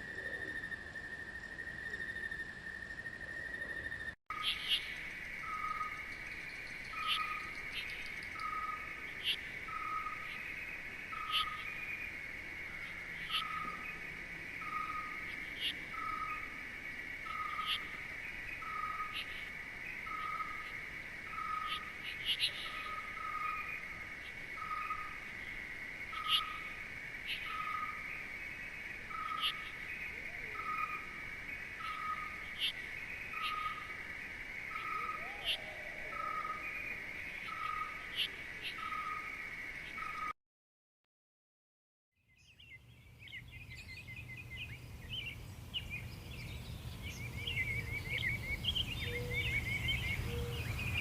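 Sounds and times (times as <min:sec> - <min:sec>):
insects trilling: 0:00.0 - 0:40.2, 0:43.2 - 0:51.0.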